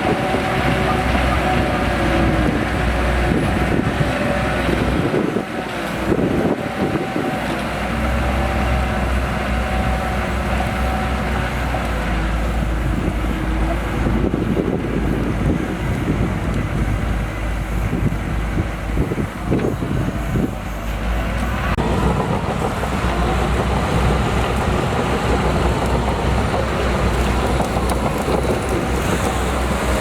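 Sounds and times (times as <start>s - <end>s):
bulldozer diesel engine running: 0.0s - 30.0s.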